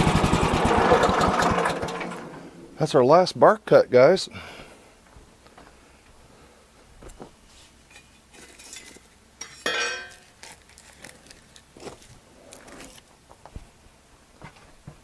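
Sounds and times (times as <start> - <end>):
loud metallic clank: 0.0 - 3.1.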